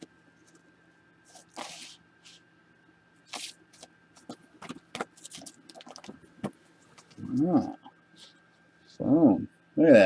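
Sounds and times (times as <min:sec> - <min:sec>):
cards sliding swishes: 0:01.3 - 0:02.4, 0:03.3 - 0:04.3.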